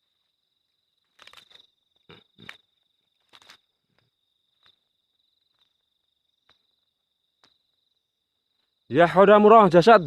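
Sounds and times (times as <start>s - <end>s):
cricket trilling: 0.0s - 10.0s
crackling rustles: 1.0s - 6.7s.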